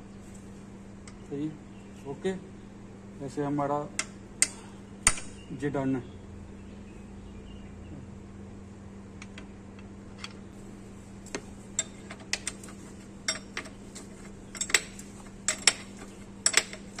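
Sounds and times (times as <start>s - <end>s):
metal tools clinking: 11.7s - 17.0s.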